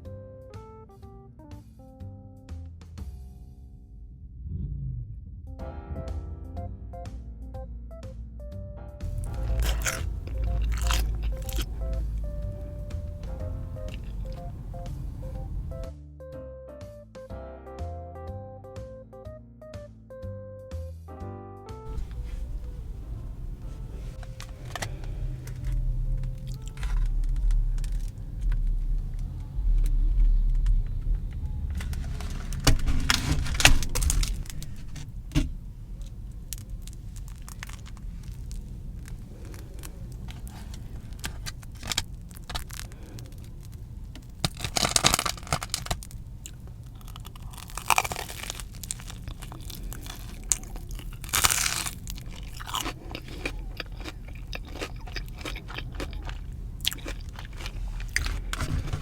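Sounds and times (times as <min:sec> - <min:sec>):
chewing: 0:09.0 - 0:15.8, 0:21.9 - 0:59.0
crunchy bites: 0:09.0 - 0:15.8, 0:21.9 - 0:59.0
steady low hum: 0:09.0 - 0:15.8, 0:21.9 - 0:59.0.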